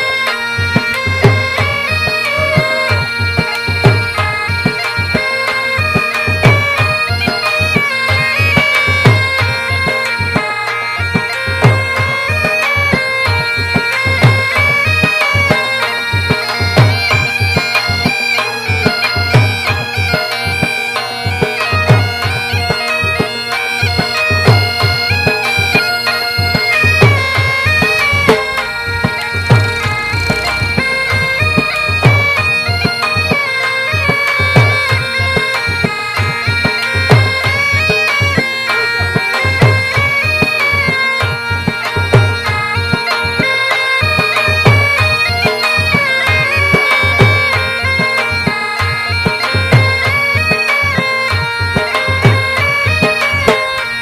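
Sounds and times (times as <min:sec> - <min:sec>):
reedy wind instrument melody: 0:00.0 - 0:54.0
low drum beat: 0:26.8 - 0:33.0.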